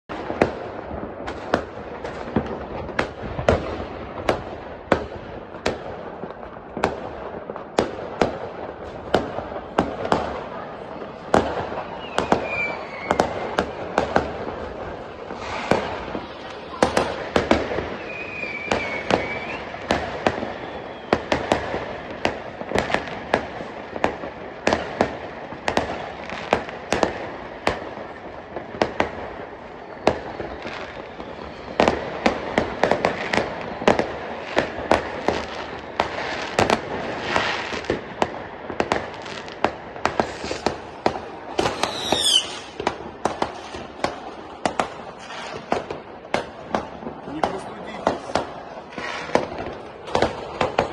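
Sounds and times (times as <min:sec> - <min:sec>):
fireworks bangs and cracks: 0:00.0 - 0:50.9
falling firework whistle: 0:11.3 - 0:23.4, 0:28.8 - 0:38.0, 0:39.3 - 0:44.1.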